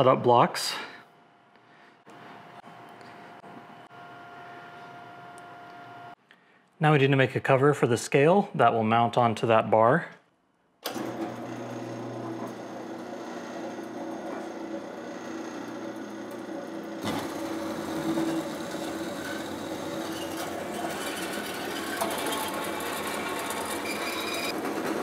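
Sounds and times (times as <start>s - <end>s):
machine tool cutting metal: 10.9s - 25.0s.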